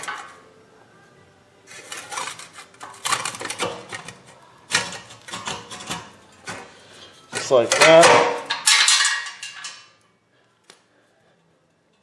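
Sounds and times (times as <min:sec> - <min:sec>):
metal parts clinking and knocking: 0:07.3 - 0:10.0.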